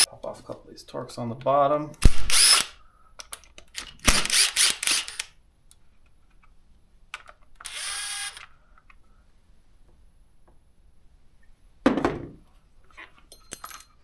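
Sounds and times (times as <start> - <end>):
power drill whining: 2.0 - 2.7, 3.8 - 5.3, 7.6 - 8.5
small clicks: 2.0 - 5.3, 7.2 - 8.5.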